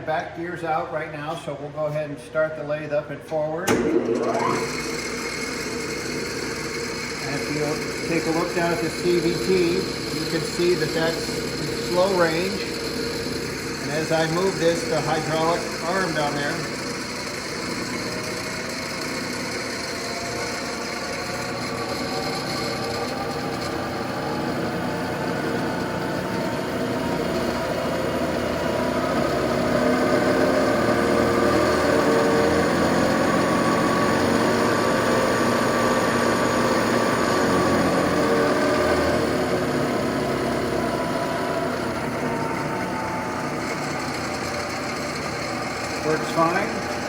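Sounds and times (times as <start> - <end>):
lathe motor whine: 3.7 - 47.0.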